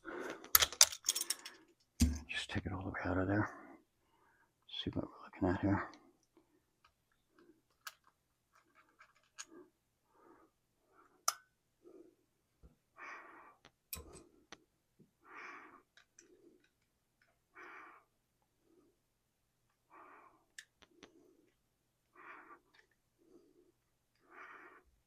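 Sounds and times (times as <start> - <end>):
slow breathing: 0.0 - 1.8, 3.5 - 4.6, 9.3 - 16.8, 17.5 - 19.1, 19.7 - 25.0.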